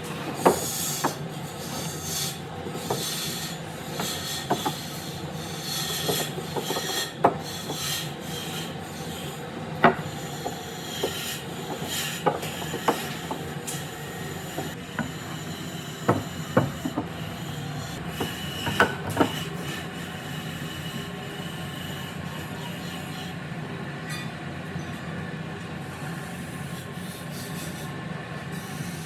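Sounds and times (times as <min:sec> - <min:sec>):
tool scraping wood: 0:00.0 - 0:22.1.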